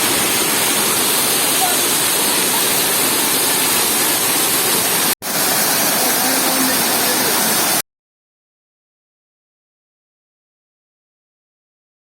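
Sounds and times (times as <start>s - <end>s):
waterfall rushing: 0.0s - 7.8s.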